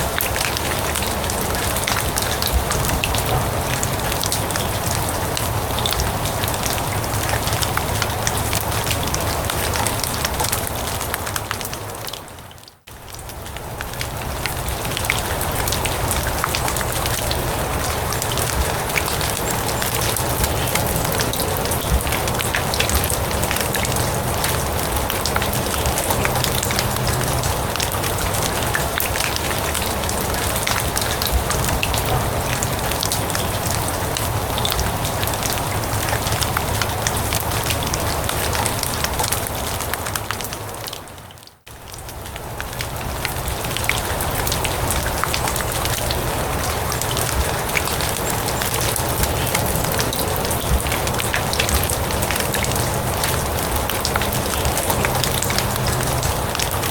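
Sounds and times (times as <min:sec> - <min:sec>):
rain falling on grass and leaves: 0:00.0 - 0:56.9.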